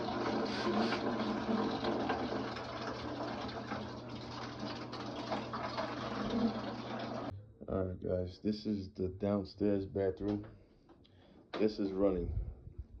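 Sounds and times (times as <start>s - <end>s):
water running into fixture: 0.0s - 7.3s.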